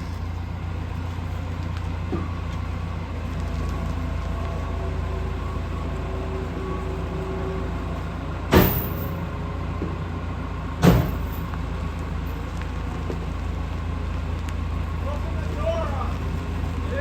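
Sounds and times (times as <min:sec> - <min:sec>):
heavy vehicle engine running: 0:00.0 - 0:17.0.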